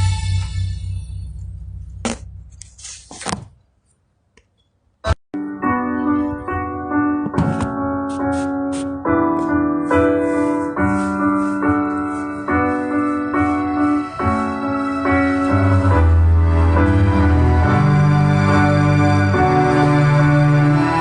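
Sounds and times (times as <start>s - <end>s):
keyboard chords: 5.4s - 21.0s.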